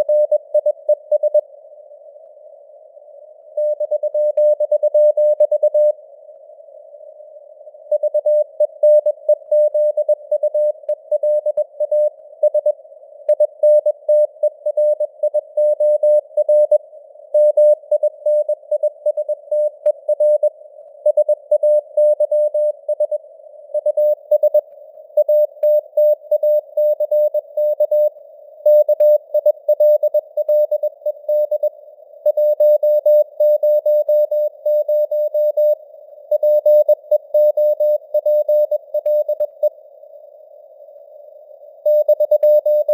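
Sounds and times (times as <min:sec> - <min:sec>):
morse code beeps: 0:25.2 - 0:28.1, 0:28.7 - 0:31.7, 0:32.3 - 0:39.7, 0:41.9 - 0:42.9.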